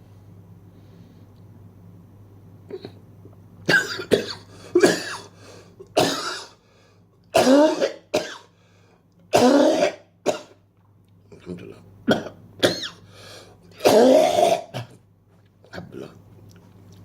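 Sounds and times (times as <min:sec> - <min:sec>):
man coughing hard: 0:03.7 - 0:05.3, 0:06.0 - 0:06.6, 0:07.4 - 0:08.5, 0:09.3 - 0:10.6, 0:12.1 - 0:13.0, 0:13.8 - 0:15.0.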